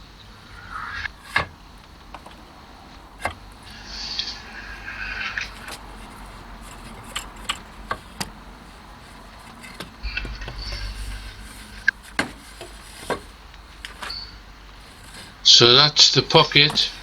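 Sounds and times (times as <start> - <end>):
wooden workpiece clicks and knocks: 1.0 - 10.1
brief low rumble: 10.0 - 13.0.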